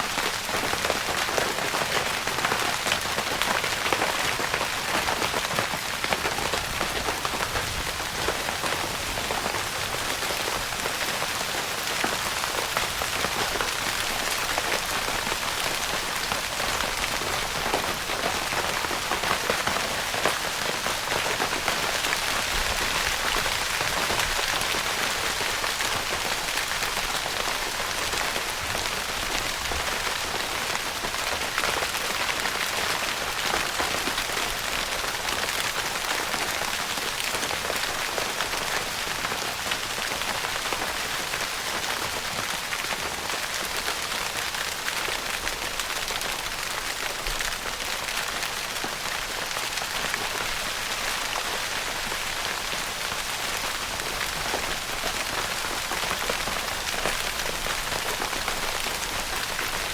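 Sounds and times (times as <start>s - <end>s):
rain pattering on a tent: 0.0s - 59.9s.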